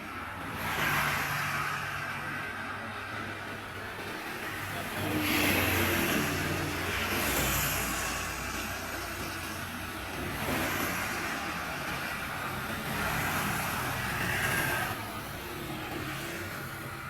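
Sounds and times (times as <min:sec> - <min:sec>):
fast traffic passing: 0:00.0 - 0:17.0.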